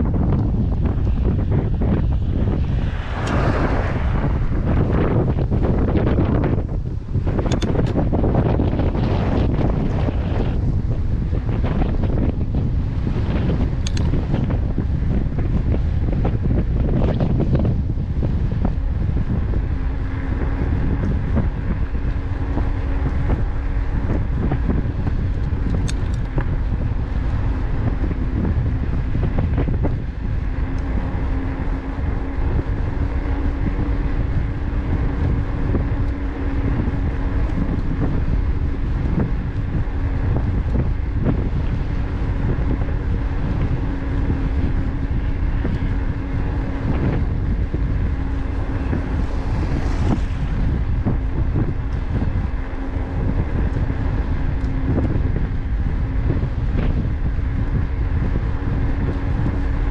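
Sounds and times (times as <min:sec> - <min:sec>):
low rumble from riding: 0:00.0 - 0:59.9
steady hum: 0:00.0 - 0:59.9
wind buffeting microphone: 0:00.0 - 0:59.9.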